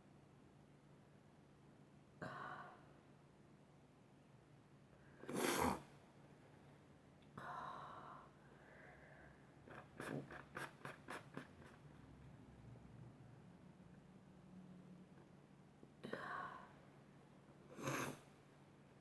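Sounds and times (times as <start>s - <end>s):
loud sneeze: 5.3s - 5.9s.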